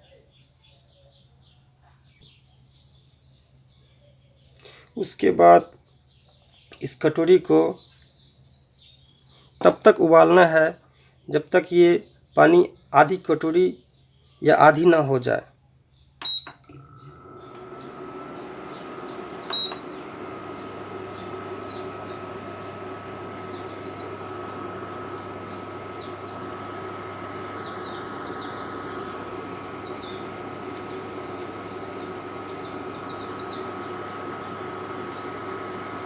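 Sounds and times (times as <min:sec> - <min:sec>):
small birds chirping: 0:00.0 - 0:36.0
microwave beep: 0:16.2 - 0:36.0
microwave oven humming: 0:16.3 - 0:36.0.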